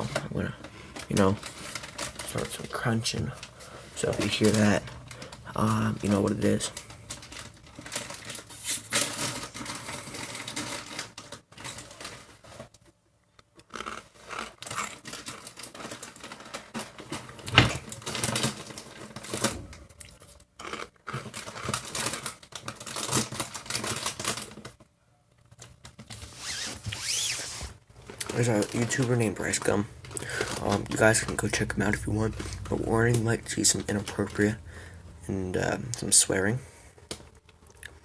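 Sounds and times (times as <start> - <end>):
corn chips crunching: 0.2 - 12.1, 13.6 - 17.1, 18.1 - 24.7, 28.1 - 35.0.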